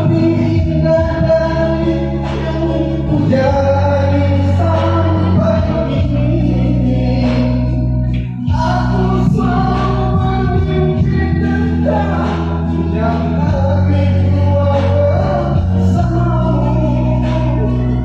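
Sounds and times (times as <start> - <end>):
instrumental accompaniment: 0.0 - 18.0
small group singing: 8.5 - 18.0.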